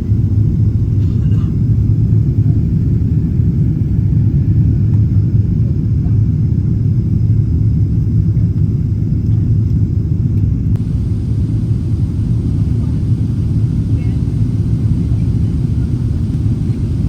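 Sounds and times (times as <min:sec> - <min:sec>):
airplane cabin engine rumble: 0:10.8 - 0:17.0.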